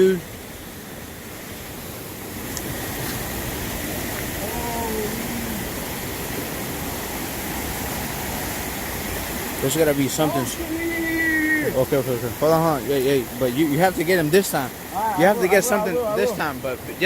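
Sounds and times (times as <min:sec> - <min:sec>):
water rushing: 0:00.0 - 0:17.0.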